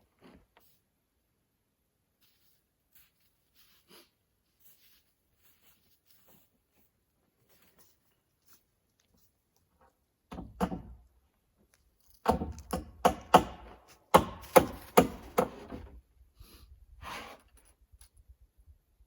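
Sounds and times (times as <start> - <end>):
hammer striking wood: 10.3 - 11.0, 12.2 - 15.8.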